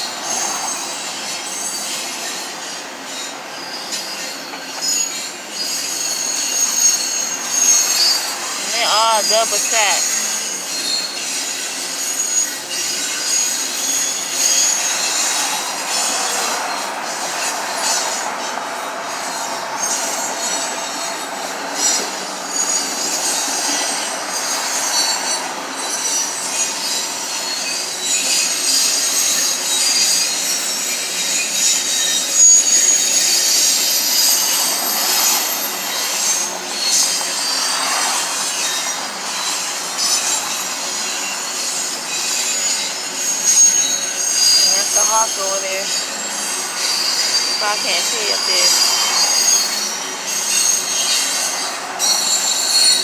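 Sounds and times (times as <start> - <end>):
freight train rolling past: 0.0 - 53.0
high-pitched wheel squeal on rails: 0.0 - 53.0.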